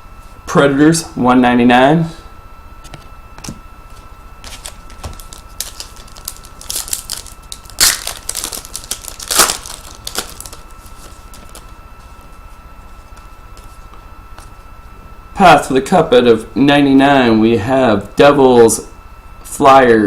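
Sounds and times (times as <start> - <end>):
packaging crinkling: 3.4 - 11.8.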